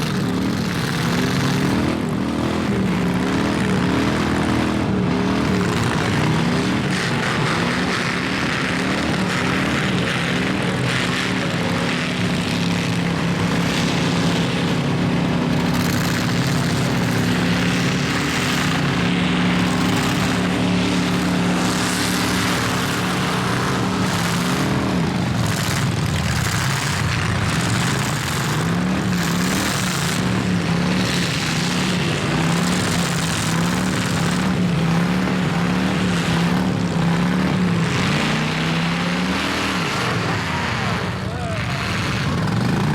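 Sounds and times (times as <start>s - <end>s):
car engines revving: 0.0s - 42.9s.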